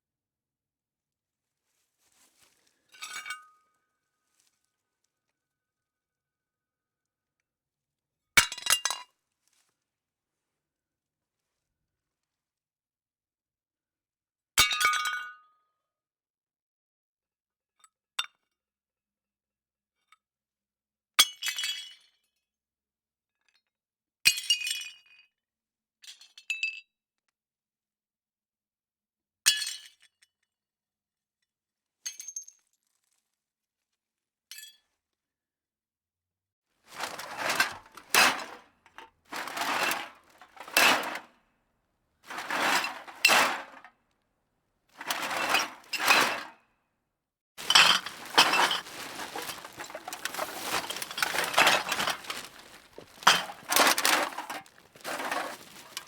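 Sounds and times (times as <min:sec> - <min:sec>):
cans jostled in a bag: 0:36.9 - 0:38.6, 0:39.3 - 0:41.3, 0:42.3 - 0:43.9, 0:45.0 - 0:46.5, 0:47.6 - 0:56.0
ceramic plates smashing: 0:36.9 - 0:38.6, 0:39.4 - 0:41.2, 0:42.3 - 0:43.8, 0:47.6 - 0:56.0
clinking shards: 0:36.9 - 0:38.6, 0:39.3 - 0:41.3, 0:42.3 - 0:43.9, 0:45.0 - 0:46.5, 0:47.6 - 0:56.0.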